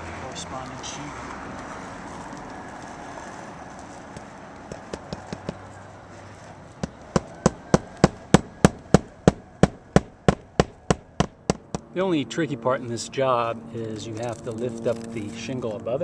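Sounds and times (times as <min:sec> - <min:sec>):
hammer hitting nail: 0:04.7 - 0:05.6, 0:06.8 - 0:11.9.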